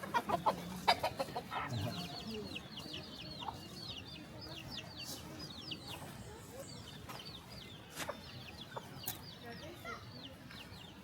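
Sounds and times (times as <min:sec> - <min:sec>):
chickens clucking: 0:00.0 - 0:11.0.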